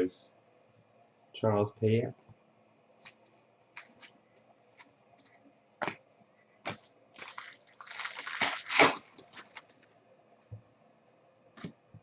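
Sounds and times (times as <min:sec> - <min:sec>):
foil wrapper crinkling: 0:03.0 - 0:04.1, 0:06.7 - 0:09.9.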